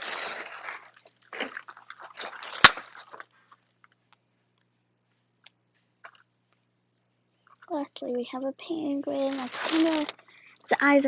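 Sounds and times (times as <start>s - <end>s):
plastic packaging rustling: 0.0s - 3.9s, 9.1s - 10.3s.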